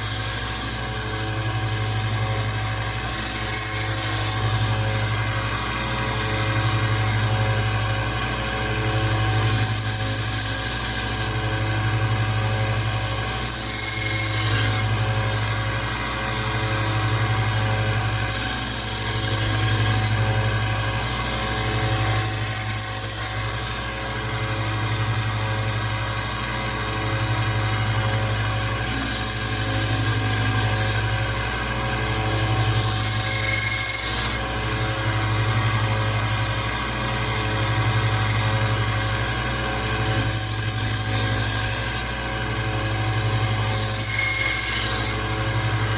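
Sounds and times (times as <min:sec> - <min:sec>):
belt sander motor hum: 0:00.0 - 0:45.9
knife blade grinding on belt: 0:43.2 - 0:45.9.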